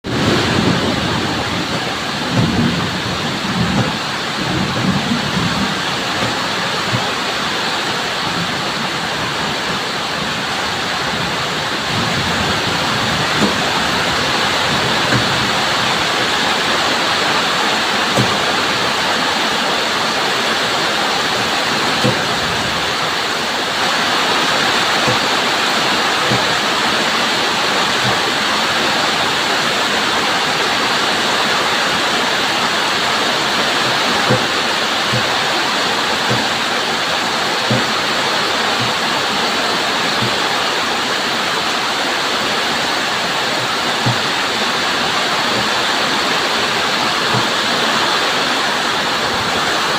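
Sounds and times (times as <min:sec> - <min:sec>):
heavy rainfall: 0:00.0 - 0:49.9
drops knocking nearby: 0:01.6 - 0:02.8, 0:03.6 - 0:07.3, 0:13.1 - 0:15.9, 0:18.1 - 0:18.6, 0:21.3 - 0:22.8, 0:24.8 - 0:25.4, 0:26.2 - 0:26.7, 0:33.9 - 0:35.5, 0:36.3 - 0:36.6, 0:37.6 - 0:38.0, 0:43.6 - 0:44.4.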